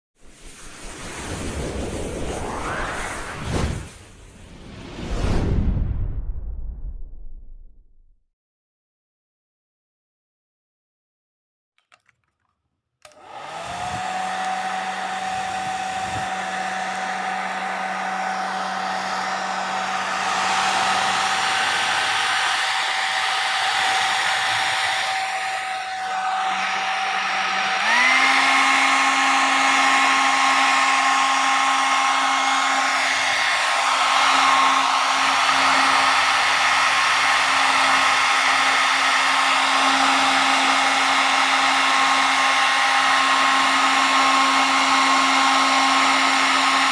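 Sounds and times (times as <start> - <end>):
hair dryer running: 11.8 - 46.9.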